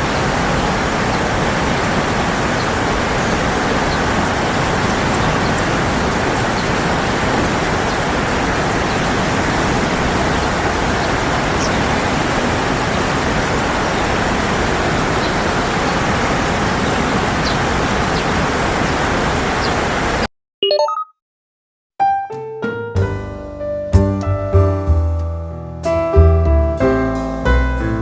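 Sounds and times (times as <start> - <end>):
flowing water rushing: 0.0 - 20.3.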